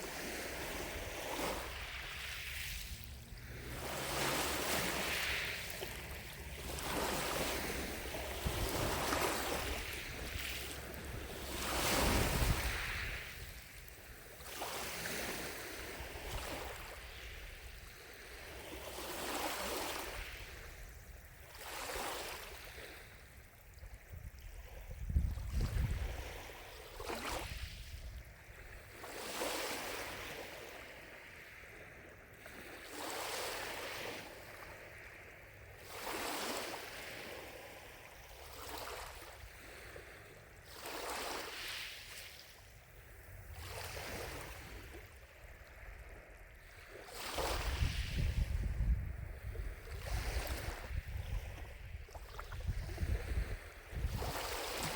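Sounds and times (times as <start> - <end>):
wind rumble on microphone: 0.0 - 29.0, 43.0 - 54.9
lake waves washing in: 0.0 - 35.2, 35.8 - 54.9.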